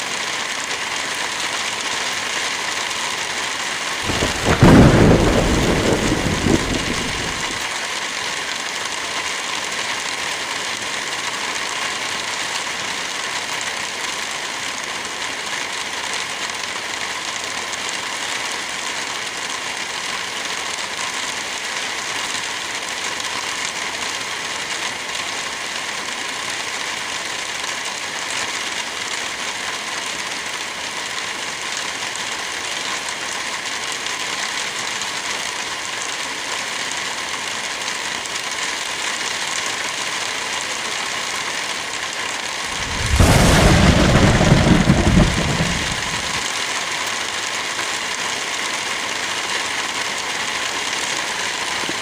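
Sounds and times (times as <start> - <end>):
light rain falling: 0.0 - 52.0
wind blowing through trees: 42.6 - 46.4.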